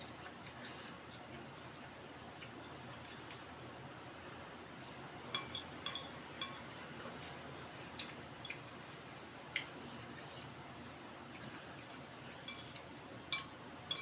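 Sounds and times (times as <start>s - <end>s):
utensils clinking against a bowl: 5.3s - 6.8s, 11.8s - 14.0s.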